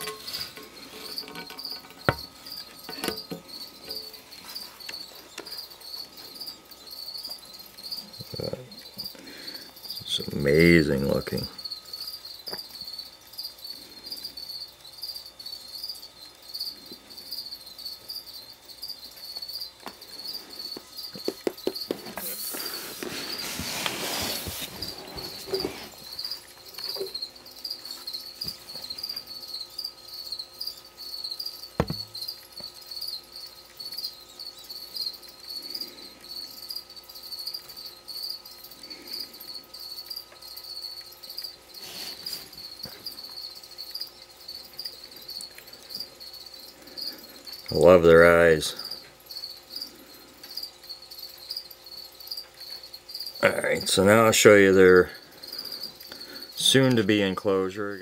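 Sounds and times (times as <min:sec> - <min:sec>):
crickets chirping: 0:00.0 - 0:58.0
rustling noise: 0:21.4 - 0:26.2
knock: 0:31.8 - 0:32.1.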